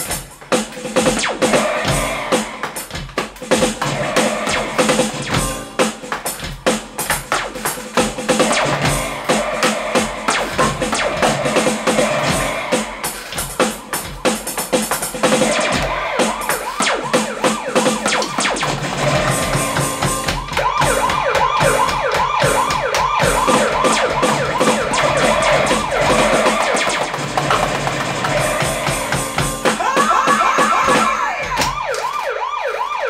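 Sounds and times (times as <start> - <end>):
quick repeated tom strokes: 0.0 - 29.8
electronic drum kit groove: 0.0 - 33.0.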